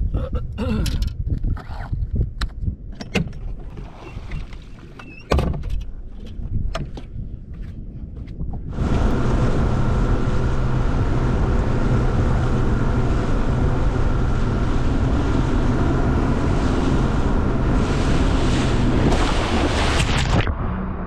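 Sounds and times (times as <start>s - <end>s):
wind on microphone: 0.0s - 21.0s
outboard motor drone: 8.6s - 21.0s
water rushing past hull: 8.7s - 20.5s.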